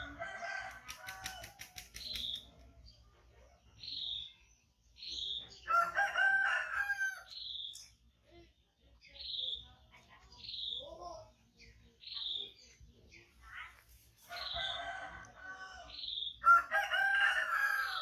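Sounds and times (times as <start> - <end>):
small bird chirping: 1.0 - 5.7, 7.2 - 16.5
rooster crowing: 5.7 - 7.3, 14.3 - 18.0.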